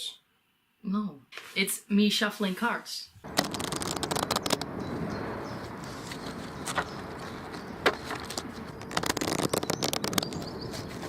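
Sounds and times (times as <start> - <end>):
playing cards being shuffled: 3.2 - 4.7, 5.6 - 11.0.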